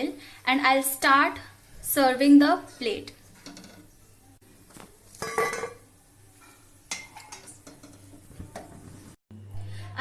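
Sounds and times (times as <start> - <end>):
clatter of utensils on cookware: 3.3 - 3.9, 5.2 - 5.8, 6.4 - 8.8
metal utensil clink: 6.9 - 8.1.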